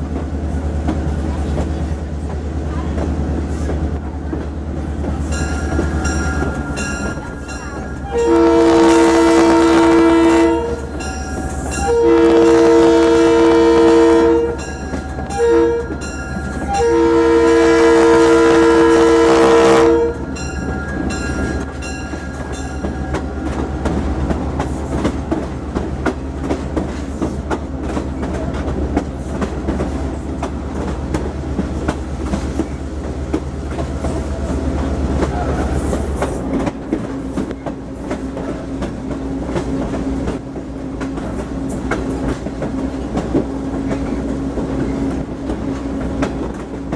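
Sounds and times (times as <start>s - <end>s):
train wheels clickety-clack: 0.0s - 46.9s
locomotive air horn blowing: 8.1s - 11.0s, 11.7s - 14.6s, 15.3s - 16.0s, 16.7s - 20.4s.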